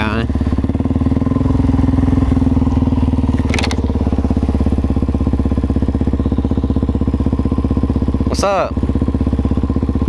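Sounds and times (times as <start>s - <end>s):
motorcycle engine running: 0.0s - 10.0s
clatter of clicks: 3.4s - 3.9s.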